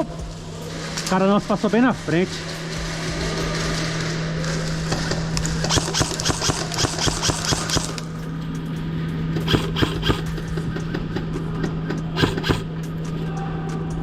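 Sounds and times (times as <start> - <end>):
steady low hum: 0.0 - 14.0
airsoft guns firing: 5.0 - 8.2, 9.5 - 10.4, 12.1 - 12.8.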